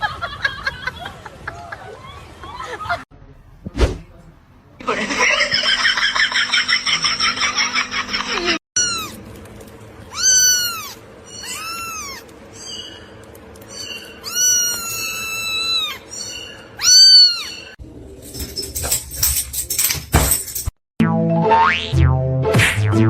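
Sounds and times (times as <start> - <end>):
cat meowing: 8.8 - 9.2, 10.1 - 12.3, 13.8 - 17.8.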